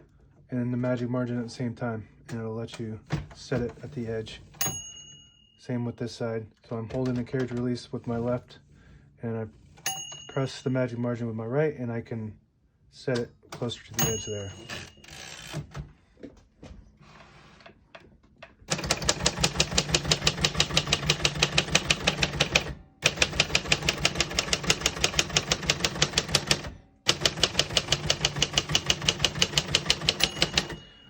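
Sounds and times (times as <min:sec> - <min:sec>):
manual typewriter typing: 0:14.0 - 0:15.8, 0:18.7 - 0:31.0.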